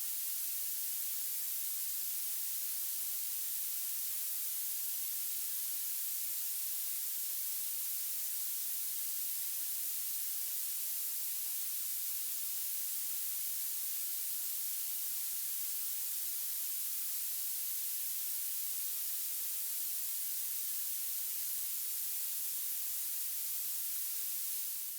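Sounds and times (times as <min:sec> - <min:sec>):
high-pitched steady hiss: 0:00.0 - 0:24.9.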